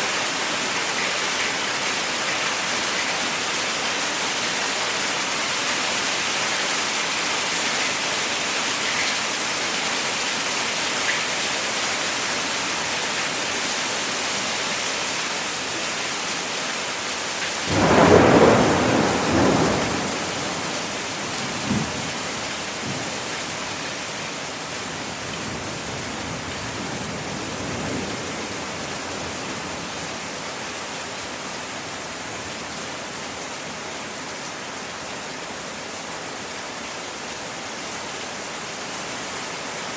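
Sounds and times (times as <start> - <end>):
thunder rumbling: 17.7 - 20.9
hail falling: 17.7 - 22.2.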